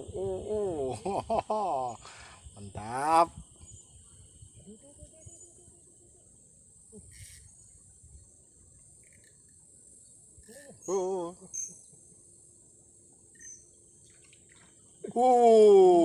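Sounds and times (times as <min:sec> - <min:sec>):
insects chirring: 0:00.0 - 0:16.0
man exclaiming: 0:15.1 - 0:16.0.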